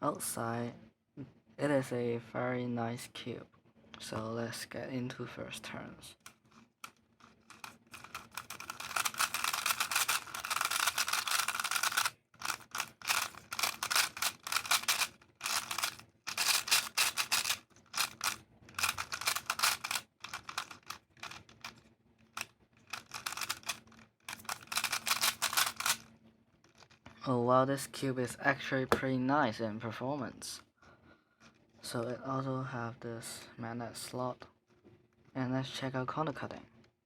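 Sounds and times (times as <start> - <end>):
plastic puzzle cube clicking: 6.2 - 26.1, 26.7 - 27.0.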